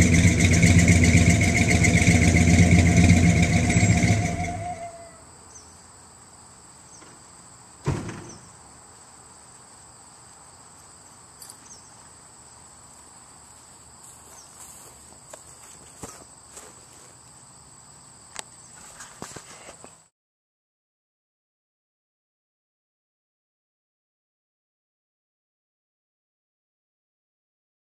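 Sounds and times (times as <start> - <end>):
sharp thump: 7.8 - 8.5.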